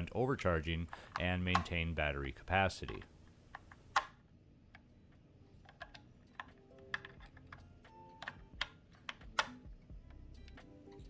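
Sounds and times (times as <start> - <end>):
faint background music: 0.0 - 11.0
plastic charger and batteries clicking: 0.6 - 4.2, 5.6 - 10.7.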